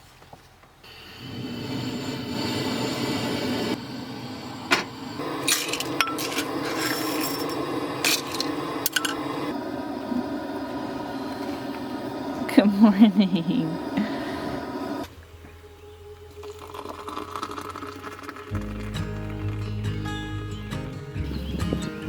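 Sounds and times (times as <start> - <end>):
kitchenware clinking and scraping: 4.7 - 9.4.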